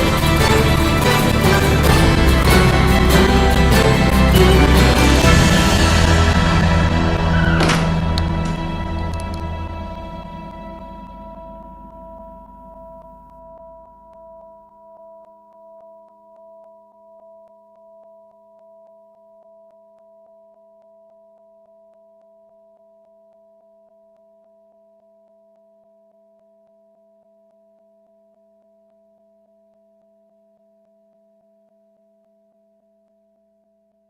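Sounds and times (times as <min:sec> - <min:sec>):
sustained closing chord: 0:00.0 - 0:14.2.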